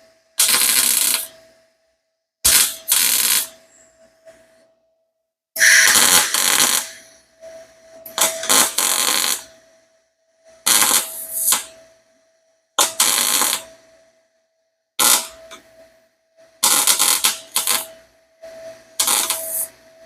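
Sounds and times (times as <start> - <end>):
welder crackling and sizzling: 0.4 - 1.4, 2.5 - 3.7, 5.6 - 7.1, 8.1 - 9.6, 10.6 - 11.8, 12.8 - 13.8, 15.0 - 15.6, 16.6 - 18.0, 19.0 - 19.8
faint hum: 2.7 - 5.0, 5.6 - 20.0.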